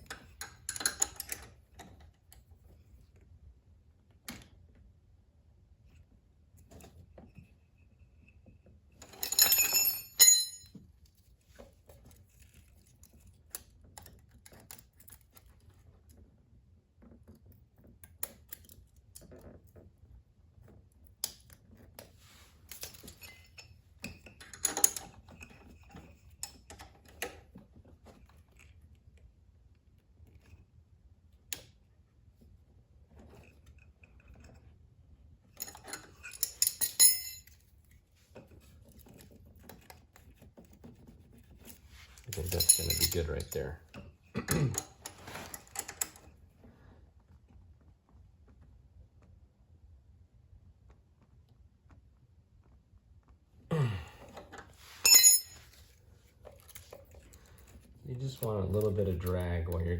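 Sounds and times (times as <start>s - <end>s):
metal tools clinking on engine: 9.0s - 10.7s, 35.6s - 37.5s, 42.2s - 43.8s, 54.9s - 55.8s, 58.2s - 59.8s
ringing metal jangle: 9.1s - 10.8s, 35.6s - 37.6s, 42.3s - 43.6s, 54.9s - 55.7s.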